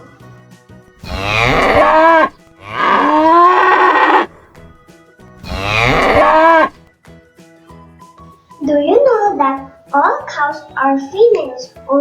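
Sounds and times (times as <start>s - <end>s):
faint background music: 0.0s - 12.0s
cow mooing: 1.0s - 4.5s, 5.4s - 6.8s.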